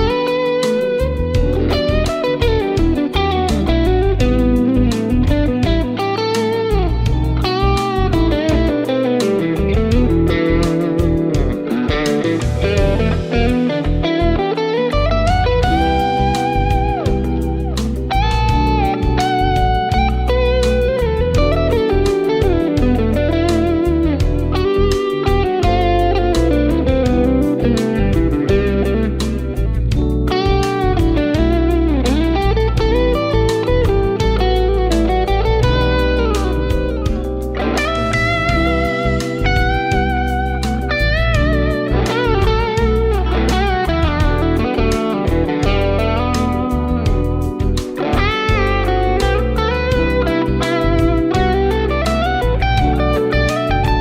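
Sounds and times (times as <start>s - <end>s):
drums and bass backing track: 0.0s - 54.0s
electric guitar lead melody: 0.0s - 54.0s
drum beat: 35.6s - 40.3s.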